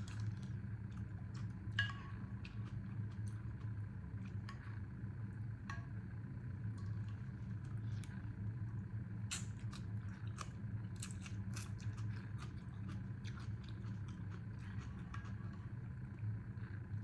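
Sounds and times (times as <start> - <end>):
person chewing: 9.3 - 15.5.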